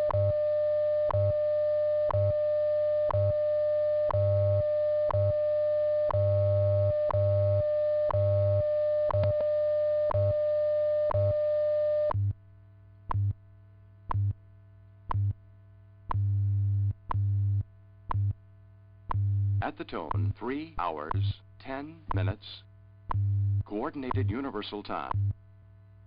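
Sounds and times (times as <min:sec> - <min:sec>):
steady audio tone: 0:00.0 - 0:26.0
low time-code pulses: 0:23.1 - 0:24.5.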